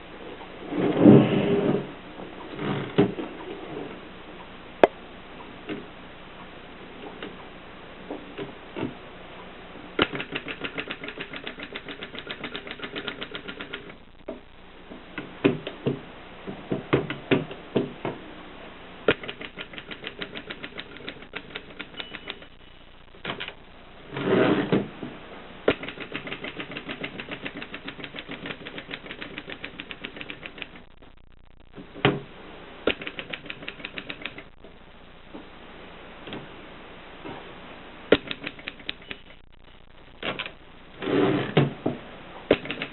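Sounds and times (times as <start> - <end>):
typewriter keystrokes: 10.0 - 14.0, 19.1 - 22.5, 25.7 - 30.8, 32.9 - 34.5, 38.1 - 39.2, 42.5 - 42.9
typewriter mechanical rasp: 10.0 - 14.0, 19.1 - 22.5, 25.7 - 30.8, 32.9 - 34.5, 42.5 - 42.9.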